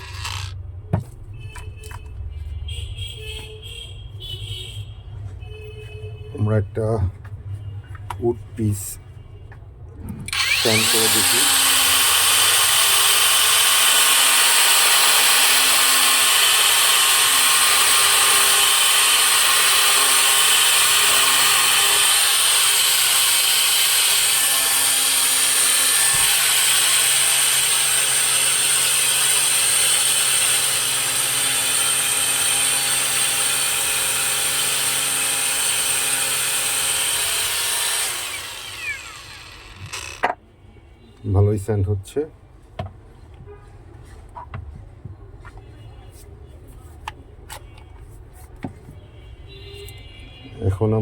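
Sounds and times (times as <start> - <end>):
angle grinder sanding wood: 0.0 - 0.6, 10.3 - 40.2.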